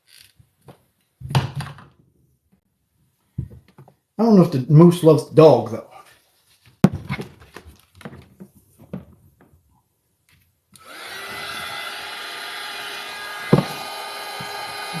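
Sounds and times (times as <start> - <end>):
small electric motor whining: 10.8 - 15.0
sharp knock: 13.5 - 13.8.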